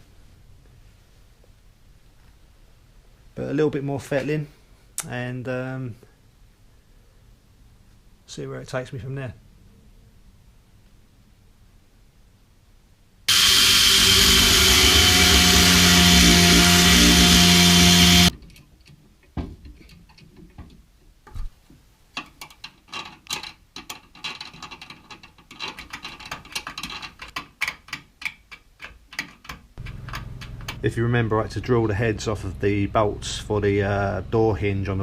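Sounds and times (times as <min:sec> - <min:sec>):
electric power tool running: 0:13.3 - 0:18.3.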